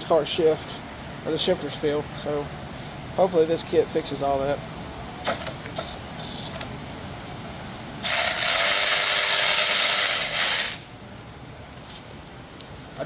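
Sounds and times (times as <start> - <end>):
power ratchet running: 8.0 - 11.0.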